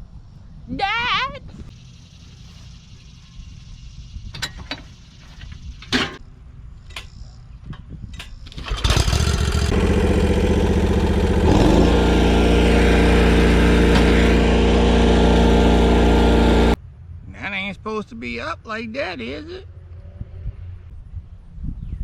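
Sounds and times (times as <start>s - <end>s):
lawn mower engine running: 8.4s - 16.8s.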